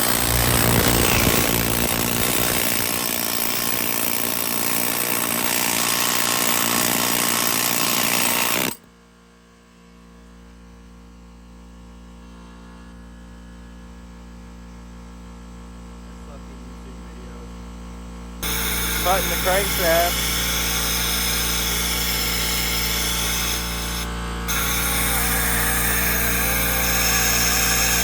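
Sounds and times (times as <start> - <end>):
power tool cutting metal: 0.0 - 8.8, 18.4 - 28.0.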